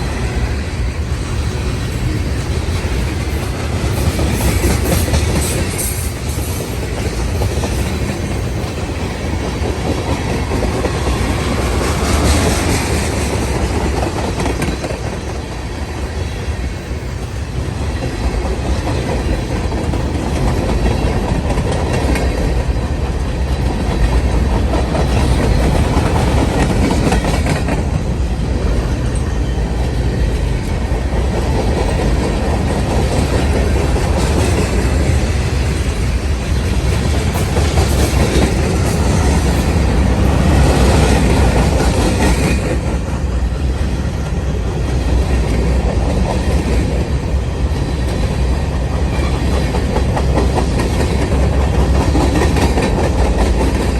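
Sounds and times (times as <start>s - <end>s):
freight train wheels rumbling: 0.0s - 53.9s.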